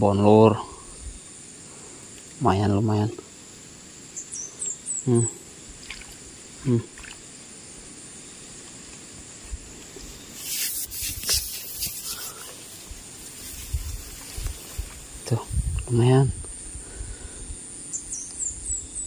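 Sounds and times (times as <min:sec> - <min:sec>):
water splashing and trickling: 0:05.7 - 0:07.3
rustling: 0:08.5 - 0:15.4.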